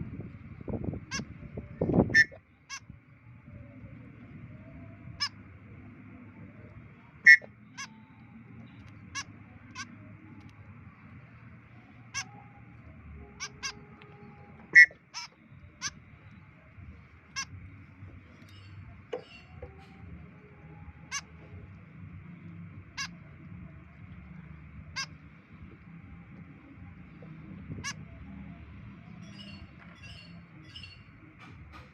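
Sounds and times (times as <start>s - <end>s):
low background rumble: 0.0s - 31.9s
bird giving sharp calls: 2.2s - 2.8s, 7.3s - 8.1s, 13.3s - 13.9s, 14.7s - 16.1s.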